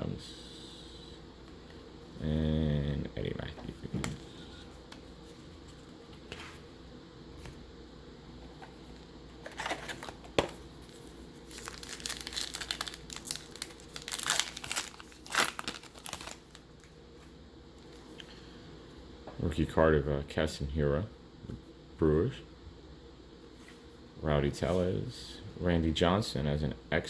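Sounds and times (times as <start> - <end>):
plastic foil wrapper crackling: 11.4 - 16.9.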